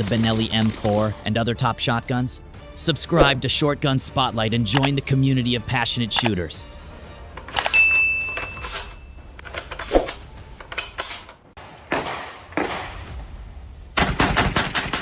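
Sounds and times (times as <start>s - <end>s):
metallic clacks of firearm handling: 4.8s - 5.0s, 7.0s - 11.6s
gunshots: 14.0s - 15.0s.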